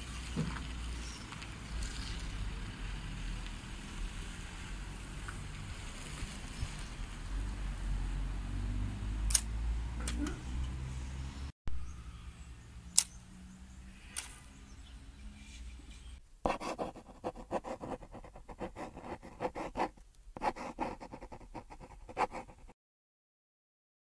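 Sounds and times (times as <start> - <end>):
sharp clicks: 9.3 - 9.5, 12.9 - 13.2.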